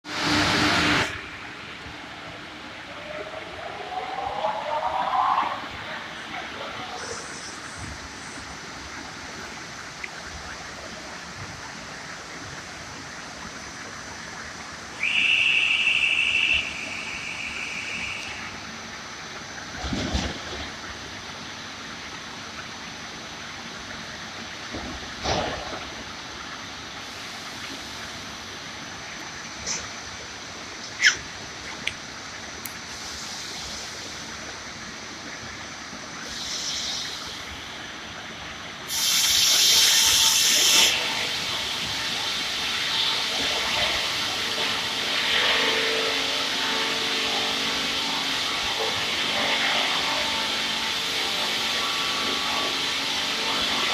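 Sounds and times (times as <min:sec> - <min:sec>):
loud high whine: 0:00.0 - 0:11.4, 0:12.1 - 0:20.6, 0:36.1 - 0:53.9
sawmill machine rushing: 0:39.7 - 0:53.9.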